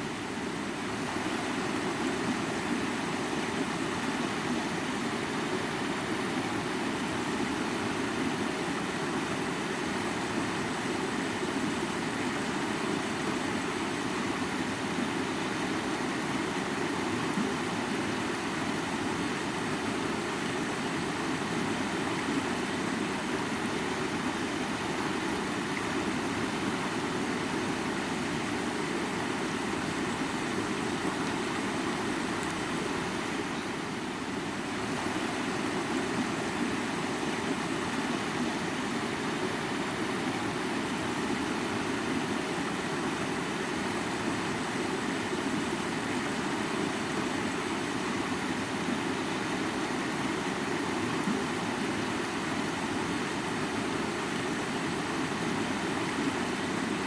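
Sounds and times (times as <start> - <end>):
river water rushing: 0.0 - 57.0.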